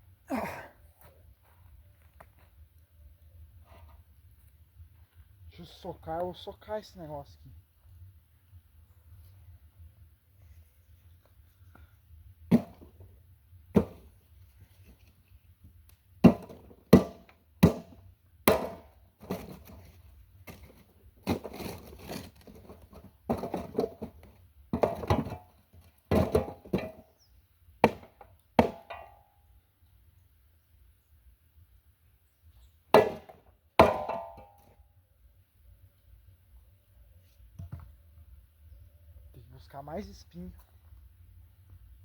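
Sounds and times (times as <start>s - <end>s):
firewood knocks and cracks: 12.5s - 13.1s, 13.7s - 14.1s, 16.2s - 27.1s, 27.8s - 29.3s, 32.9s - 34.8s.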